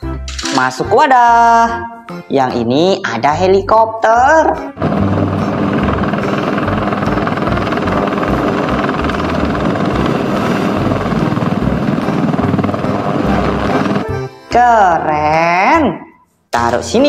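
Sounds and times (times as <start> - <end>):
helicopter rotor chop: 4.8 - 14.2.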